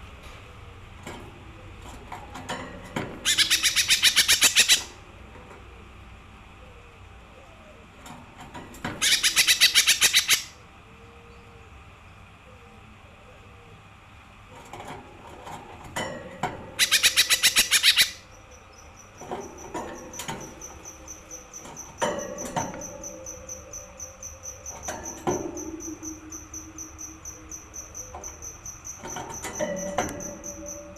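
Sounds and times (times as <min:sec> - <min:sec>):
bird singing fast trill: 0:03.3 - 0:04.9, 0:09.0 - 0:10.6, 0:16.8 - 0:29.4
high pulsing chirp: 0:16.8 - 0:30.9.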